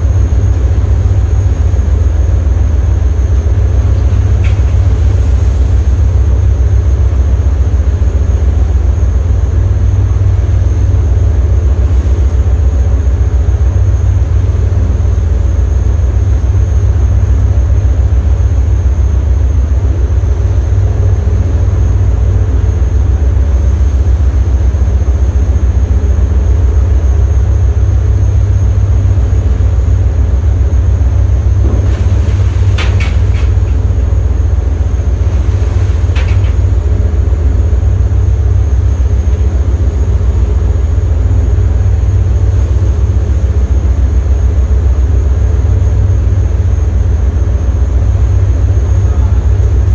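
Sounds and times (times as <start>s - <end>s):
boat engine running: 0.0s - 49.9s.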